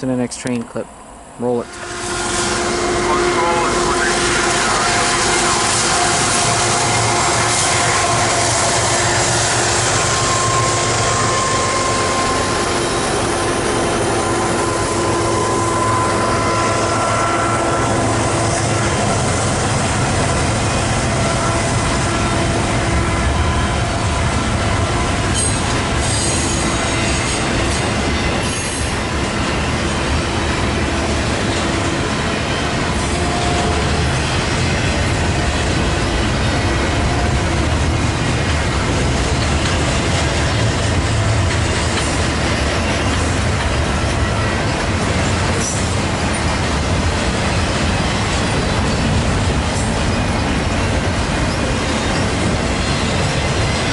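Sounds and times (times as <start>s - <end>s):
train wheels clacking over rail joints: 24.0s - 53.9s.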